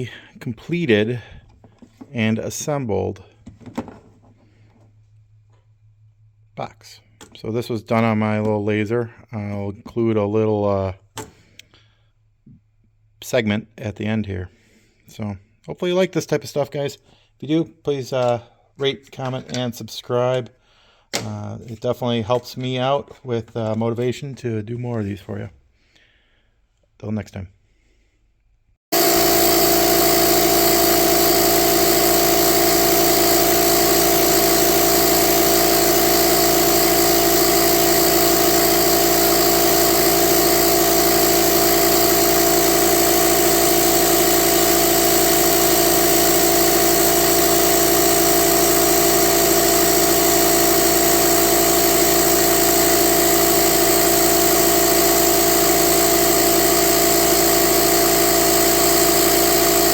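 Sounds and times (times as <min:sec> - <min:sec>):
laser engraver machine drone: 0:28.9 - 0:59.9.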